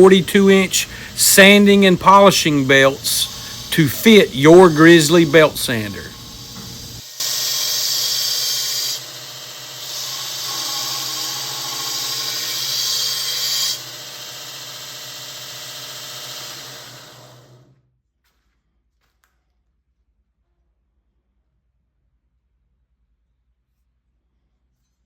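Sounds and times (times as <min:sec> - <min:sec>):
metal grinding on belt sander: 0:00.0 - 0:17.5
belt sander motor hum: 0:00.0 - 0:17.6.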